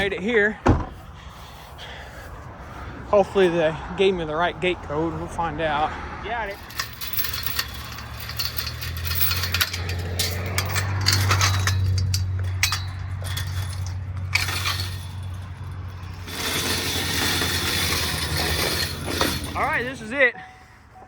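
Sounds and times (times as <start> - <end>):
vehicle engine droning: 0.0 - 21.0
metal clinks and rattles: 6.5 - 20.1.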